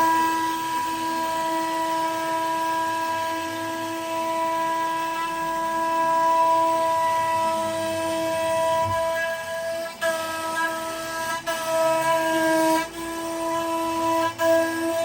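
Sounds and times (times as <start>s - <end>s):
router spindle whining: 0.0s - 15.0s.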